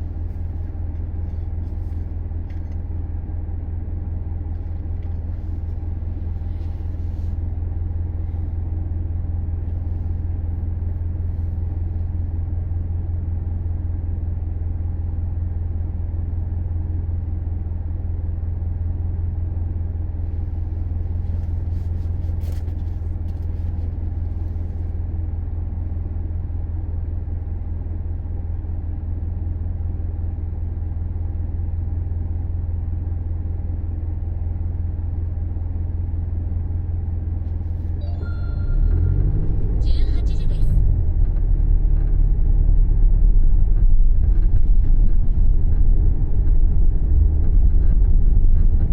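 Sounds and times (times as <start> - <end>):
low car drone: 37.2 - 48.9.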